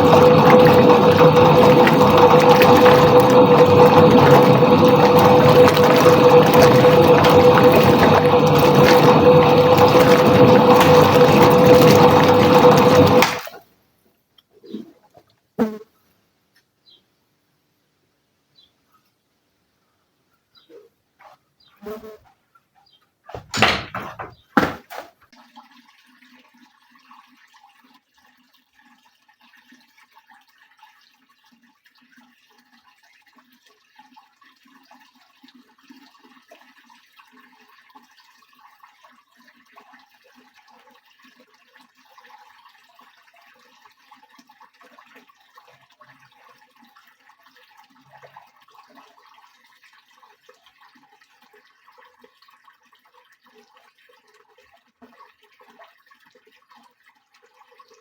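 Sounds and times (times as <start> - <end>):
water splashing in washing machine: 0.0 - 13.6, 23.4 - 27.6
loud knock: 23.4 - 25.0.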